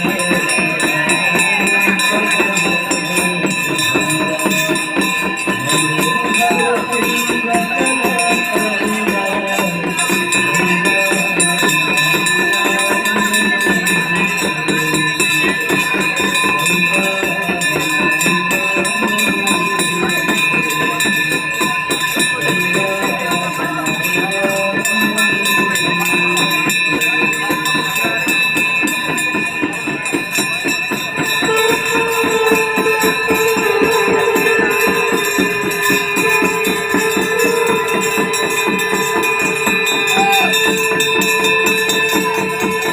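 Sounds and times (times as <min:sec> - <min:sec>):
jingling percussion: 0:00.0 - 0:42.9
person singing: 0:00.0 - 0:42.9
ringing tones: 0:00.0 - 0:42.9
long held tone: 0:30.5 - 0:42.9.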